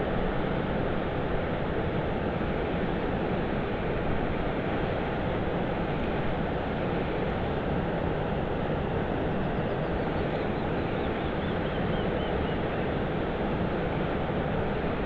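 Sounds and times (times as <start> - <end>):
small bird singing: 10.0 - 12.8.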